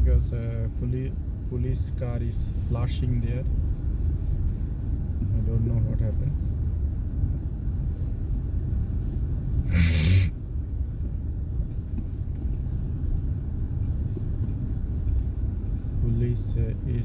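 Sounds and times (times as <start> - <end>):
car engine and tyre noise: 0.0 - 17.0.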